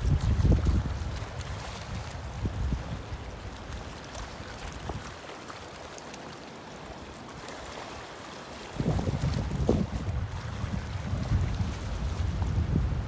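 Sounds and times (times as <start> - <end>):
wind buffeting microphone: 0.0 - 5.2, 8.7 - 13.0
wind: 0.0 - 13.0.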